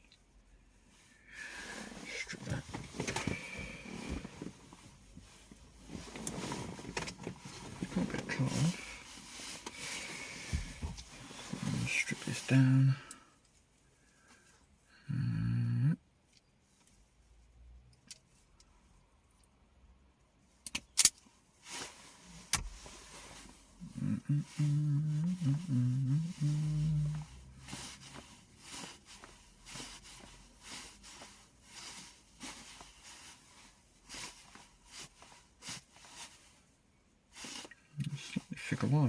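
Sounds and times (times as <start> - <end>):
man humming: 15.0 - 16.0, 23.8 - 27.3.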